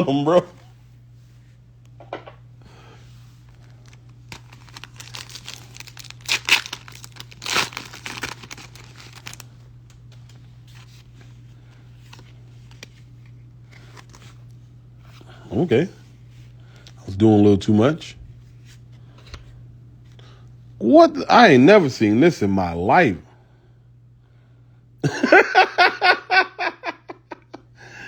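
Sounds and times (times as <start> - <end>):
foil wrapper tearing and crinkling: 3.6 - 10.0.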